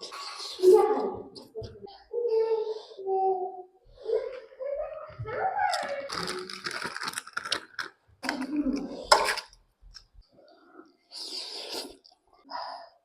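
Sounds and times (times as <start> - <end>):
person slurping and chewing noodles: 11.1 - 12.2.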